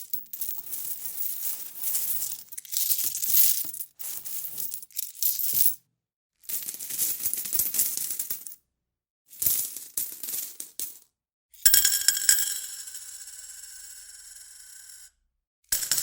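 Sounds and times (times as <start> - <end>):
coins clinking and jingling: 0.1 - 5.8.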